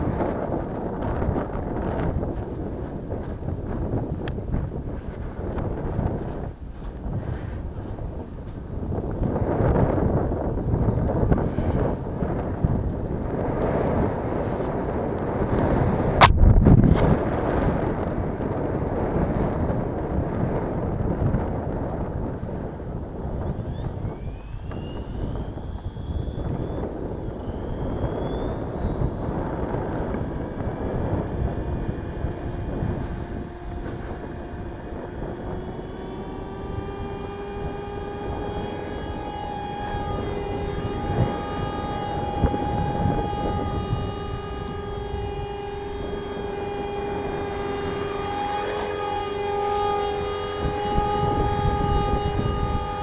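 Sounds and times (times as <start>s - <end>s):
high whine: 0.0s - 53.0s
rc helicopter rotor whirring: 0.0s - 53.0s.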